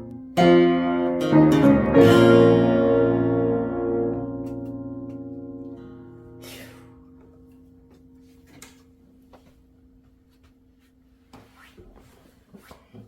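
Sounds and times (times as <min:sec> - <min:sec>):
piano and acoustic guitar note: 0:00.0 - 0:09.5.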